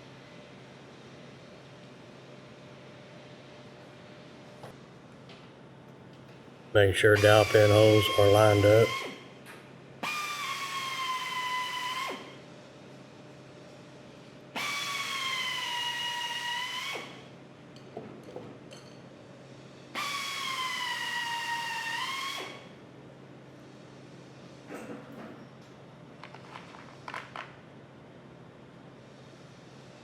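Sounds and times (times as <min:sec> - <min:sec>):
power drill whining: 0:07.2 - 0:09.2.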